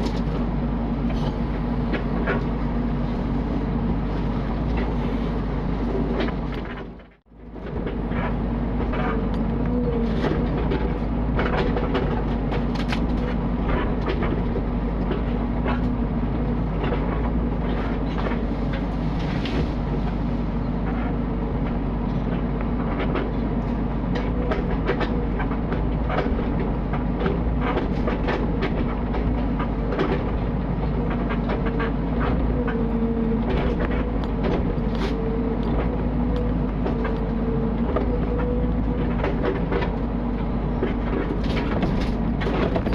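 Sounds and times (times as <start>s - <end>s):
excavator diesel engine running: 0.0s - 42.9s
machine clanks and knocks: 5.9s - 42.9s.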